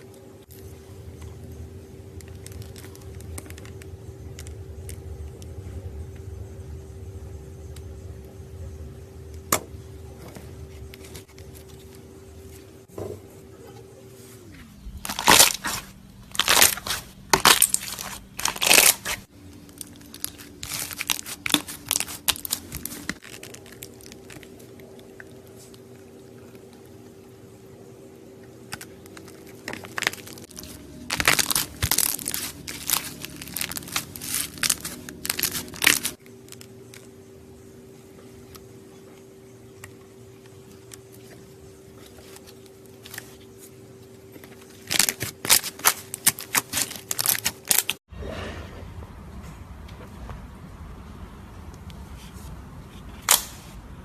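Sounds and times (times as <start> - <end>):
slime crackling when squeezed: 15.0 - 24.8, 29.6 - 36.2.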